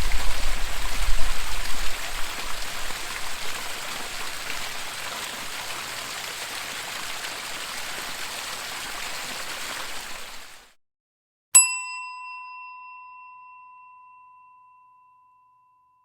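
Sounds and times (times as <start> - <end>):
waterfall rushing: 0.0 - 10.7
bell ringing: 11.6 - 15.9.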